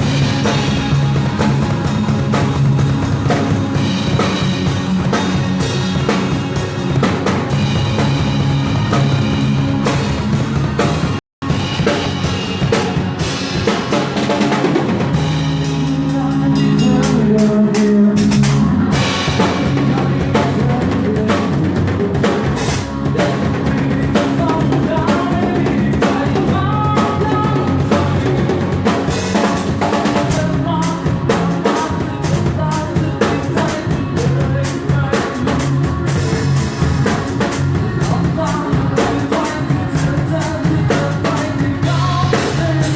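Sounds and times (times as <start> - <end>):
bass drum and rim hits: 0.0 - 31.5
live rock band playing: 0.0 - 42.9
person singing: 15.6 - 42.9.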